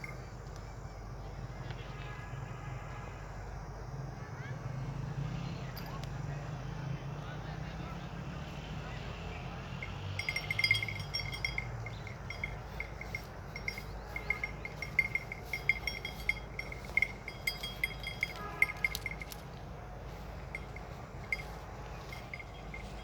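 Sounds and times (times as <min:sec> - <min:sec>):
cow bells clinking: 0:00.0 - 0:00.2, 0:09.6 - 0:23.0.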